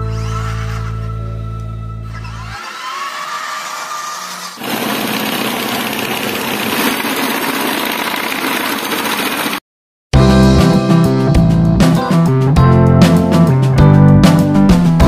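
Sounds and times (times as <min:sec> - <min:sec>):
power tool running loudly: 0:04.2 - 0:09.6.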